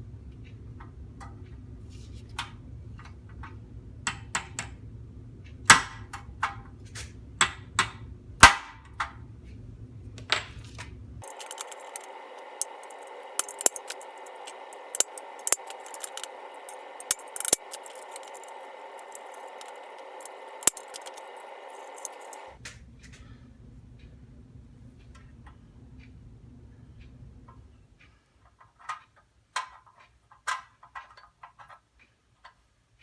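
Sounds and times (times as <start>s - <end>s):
sharp clicks and knocks: 11.2s - 22.6s
steady whirring: 11.2s - 22.6s.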